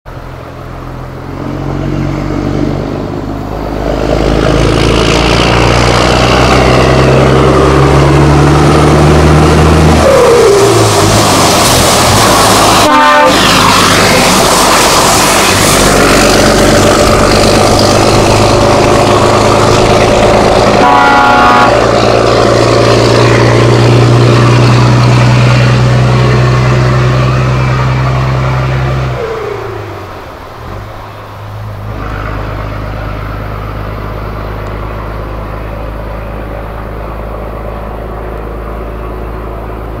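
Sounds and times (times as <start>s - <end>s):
diesel truck passing by: 0.1s - 40.0s
truck horn toot: 12.7s - 13.9s, 20.8s - 22.1s.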